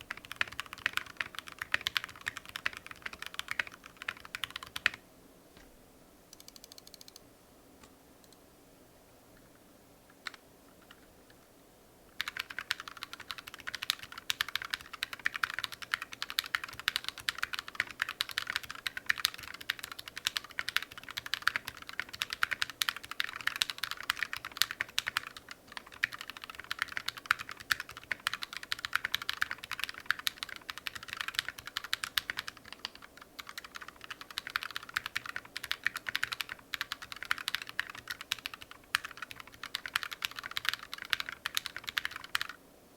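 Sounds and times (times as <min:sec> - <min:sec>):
mechanical keyboard typing: 0:00.0 - 0:05.0, 0:06.3 - 0:07.2, 0:12.2 - 0:42.6
faint clicks: 0:06.3 - 0:08.4.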